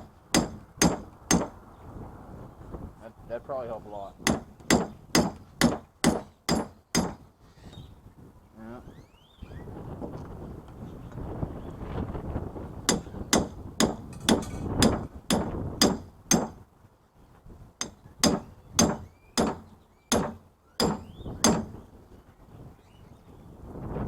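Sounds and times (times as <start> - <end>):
hammer blows on metal: 0.0 - 1.6, 4.2 - 7.3, 12.9 - 16.6, 17.8 - 21.9.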